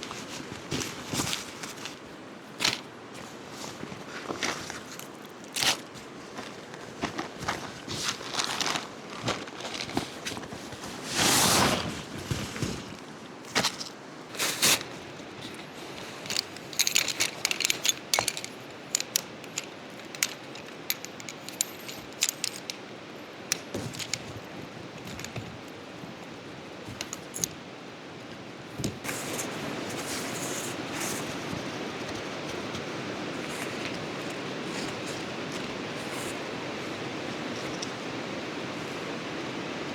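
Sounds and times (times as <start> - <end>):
rustling: 0.0 - 27.6, 28.8 - 39.2
metallic clinks and rattles: 16.2 - 25.7, 26.9 - 27.6.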